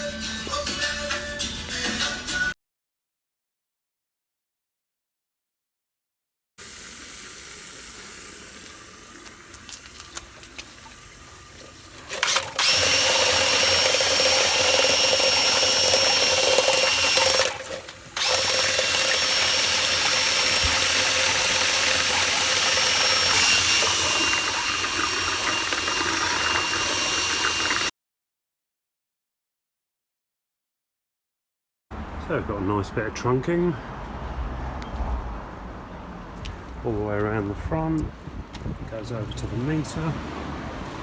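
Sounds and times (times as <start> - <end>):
power tool motor whining: 11.9 - 27.9.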